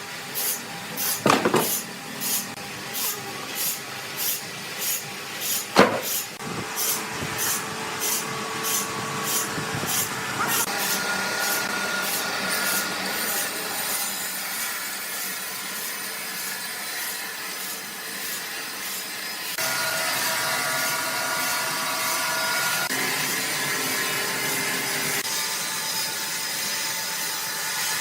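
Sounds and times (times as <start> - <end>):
saw cutting wood: 0.4 - 28.0
sawmill machinery din: 0.9 - 3.5, 5.4 - 13.8.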